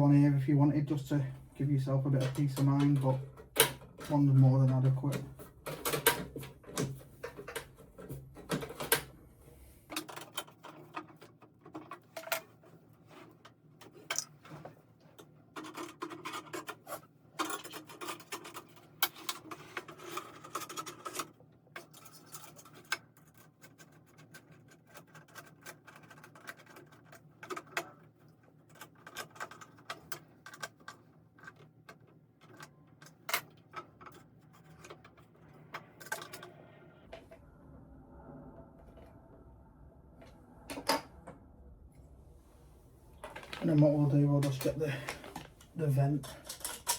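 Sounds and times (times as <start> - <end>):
small metal parts clicking and scraping: 9.9 - 36.8, 44.4 - 46.9.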